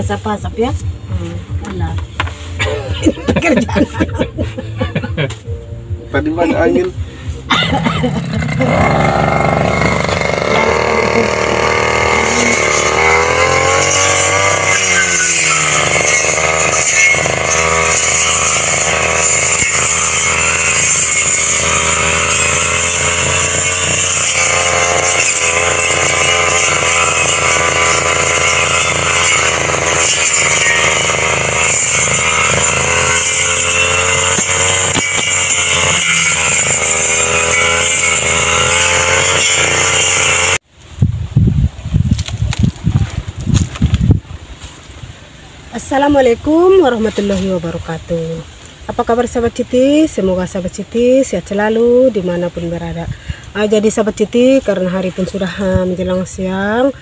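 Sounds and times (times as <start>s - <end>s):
small petrol engine revving: 7.6s - 40.7s.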